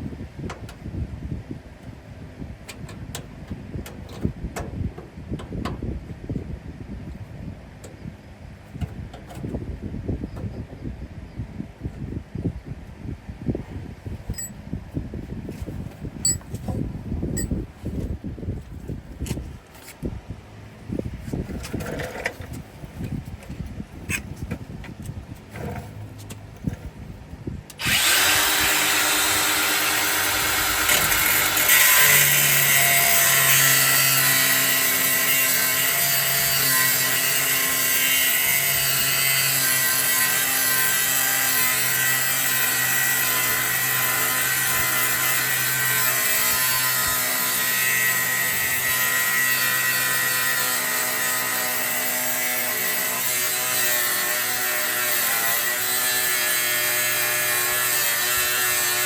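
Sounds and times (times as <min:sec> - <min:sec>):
power tool cutting steel: 0:27.8 - 0:59.0.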